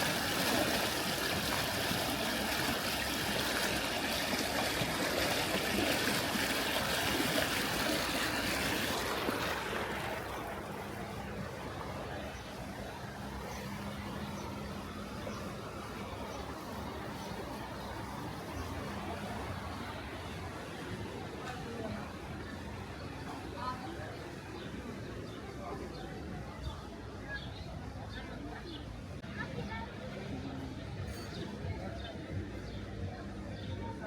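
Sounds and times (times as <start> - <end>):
rushing water: 0.0 - 26.4.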